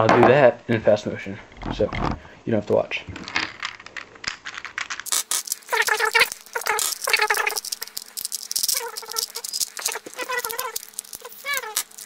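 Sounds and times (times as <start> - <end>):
plastic cube pieces clicking: 3.2 - 12.0
high-pitched squeaky voice: 5.7 - 12.0.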